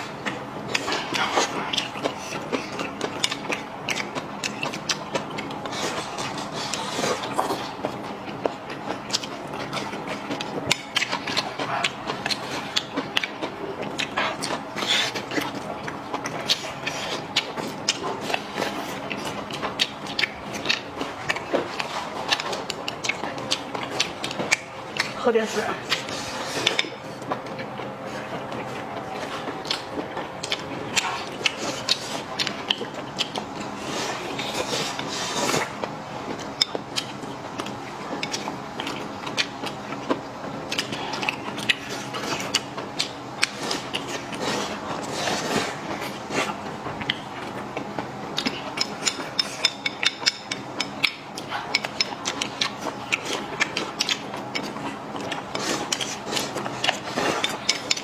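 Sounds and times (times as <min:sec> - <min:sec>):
utensils clicking against dishes: 0:48.4 - 0:58.0.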